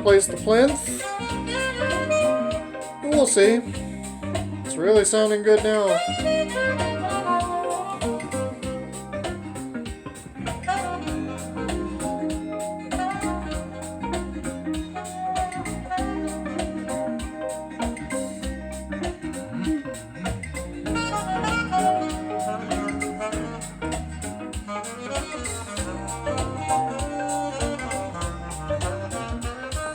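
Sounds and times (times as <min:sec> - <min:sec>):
person talking: 0:00.0 - 0:01.0, 0:03.0 - 0:03.8, 0:04.7 - 0:06.2
instrumental music with steady beat: 0:00.0 - 0:29.9.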